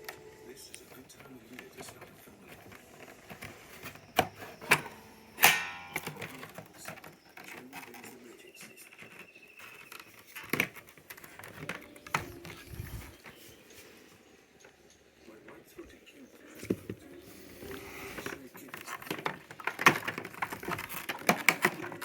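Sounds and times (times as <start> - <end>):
clicks and knocks: 1.8 - 8.2.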